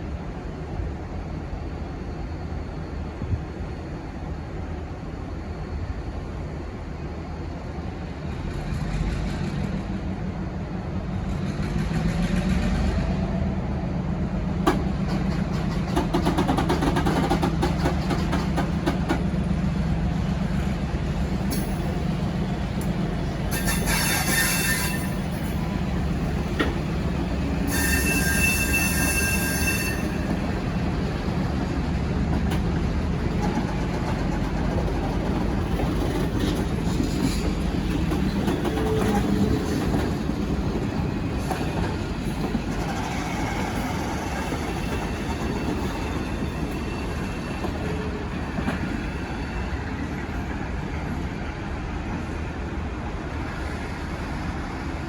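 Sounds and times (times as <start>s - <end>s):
diesel locomotive engine: 0.0s - 55.0s
wheels squealing: 23.5s - 25.7s, 27.5s - 30.7s.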